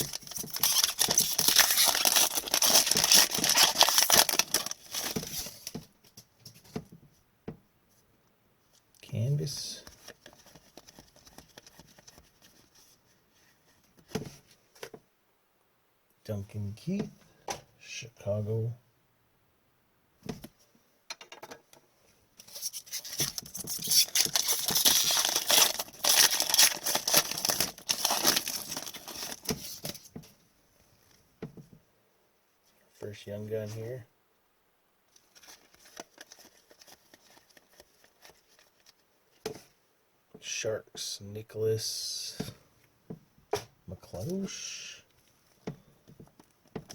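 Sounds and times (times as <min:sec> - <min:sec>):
cards rustling and clicking: 0:00.0 - 0:05.8, 0:09.8 - 0:12.9, 0:22.4 - 0:30.1, 0:35.2 - 0:39.6
trading cards flipped by hand: 0:09.8 - 0:12.7, 0:35.2 - 0:39.0.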